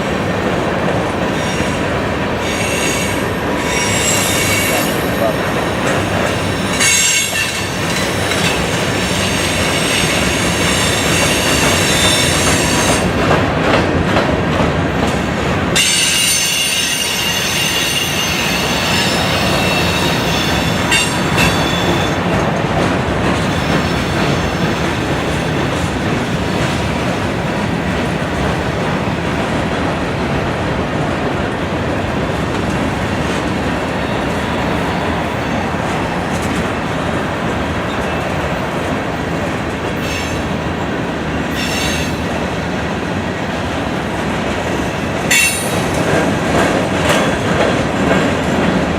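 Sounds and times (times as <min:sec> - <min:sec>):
train wheels rumbling on rail: 0:00.0 - 0:48.9
wheel flange squeal: 0:15.8 - 0:22.2.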